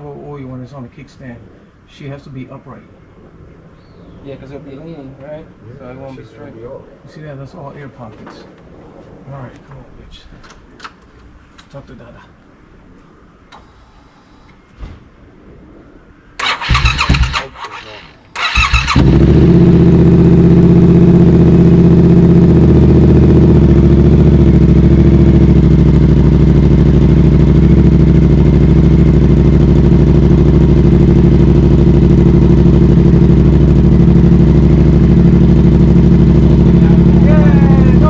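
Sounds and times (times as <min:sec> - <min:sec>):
motorcycle engine idling: 0:16.4 - 0:38.0.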